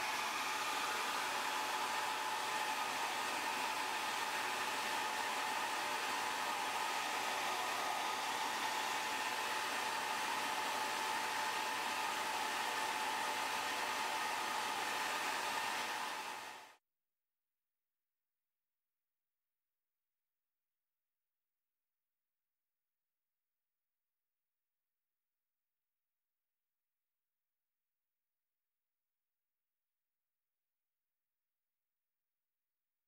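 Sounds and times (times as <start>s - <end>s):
hair dryer blowing: 0.0s - 16.8s.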